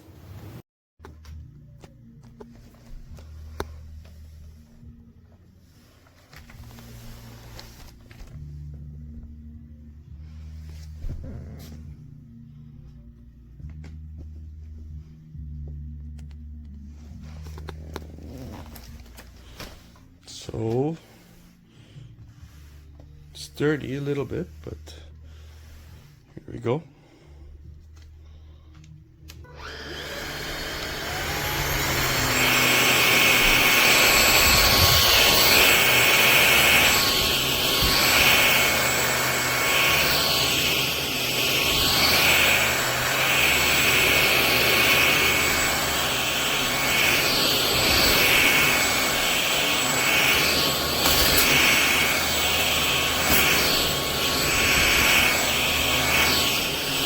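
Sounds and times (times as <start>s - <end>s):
vacuum motor whining: 29.4s - 57.0s.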